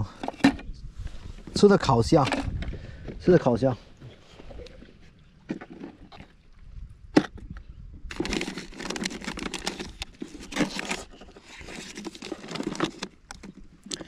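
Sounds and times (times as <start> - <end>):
rustling crinkling handling noise: 8.1 - 14.0.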